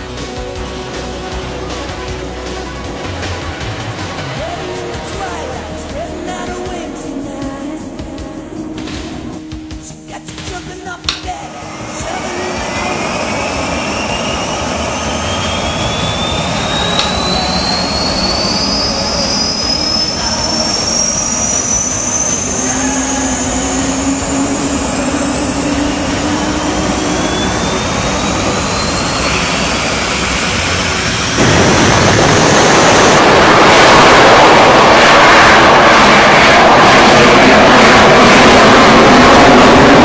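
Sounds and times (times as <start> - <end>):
jet turbine whine rising: 0.0 - 9.9, 11.0 - 40.0
rush of jet noise: 11.1 - 40.0.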